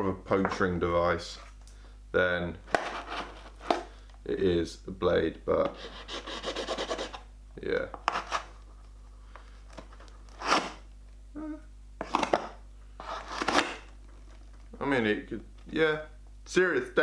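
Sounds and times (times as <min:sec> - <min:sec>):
plastic dagger stabbing cardboard: 0:12.0 - 0:13.9.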